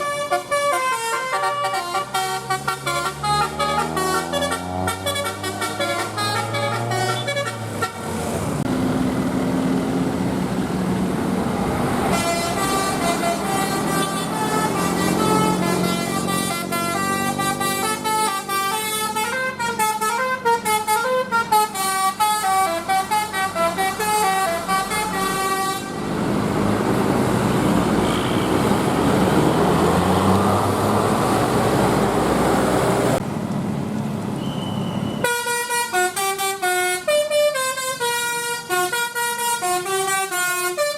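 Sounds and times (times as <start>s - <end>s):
musical air horn tune: 0.0s - 8.1s, 12.1s - 26.0s, 35.2s - 40.9s
bus engine and road noise: 0.0s - 40.9s.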